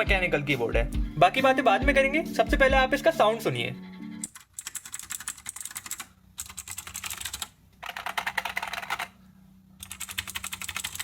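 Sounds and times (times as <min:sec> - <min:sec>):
fast keyboard typing: 0:04.2 - 0:09.2, 0:09.8 - 0:11.0.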